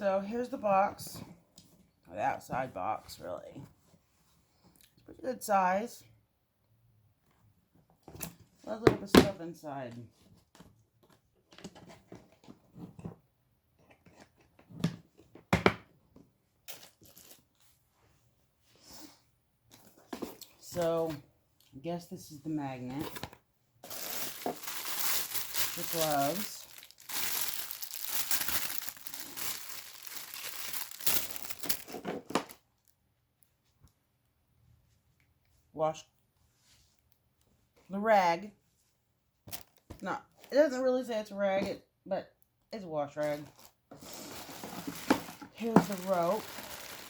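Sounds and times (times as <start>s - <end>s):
cardboard box rustling: 23.0s - 32.3s, 43.4s - 47.0s.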